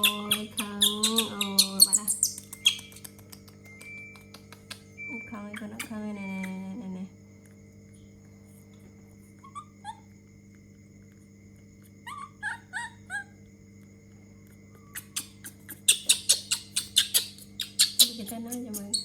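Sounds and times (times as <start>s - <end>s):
young monkey squeaking: 0.0s - 6.7s, 9.4s - 10.0s, 12.0s - 13.3s, 14.7s - 19.0s
faint electrical hum: 0.0s - 19.0s.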